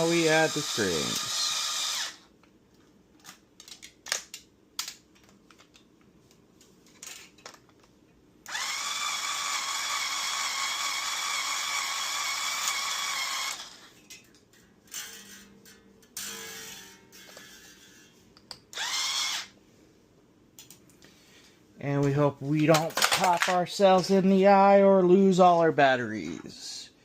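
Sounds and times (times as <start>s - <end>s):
small motor whining: 0.0s - 2.2s, 8.5s - 13.9s, 18.8s - 19.5s.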